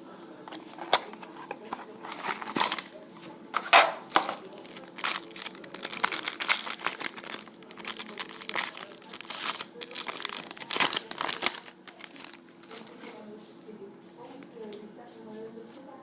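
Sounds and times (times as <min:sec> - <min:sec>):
wrapper tearing and crinkling: 0:00.7 - 0:03.0, 0:03.7 - 0:12.9.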